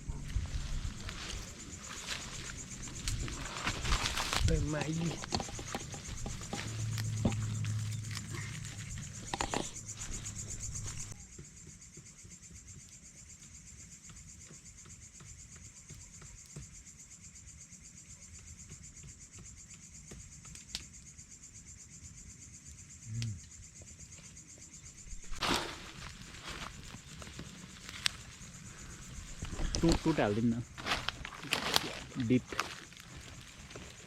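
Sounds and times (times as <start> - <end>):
low hum: 0.0 - 11.2
crickets trilling: 0.0 - 34.0.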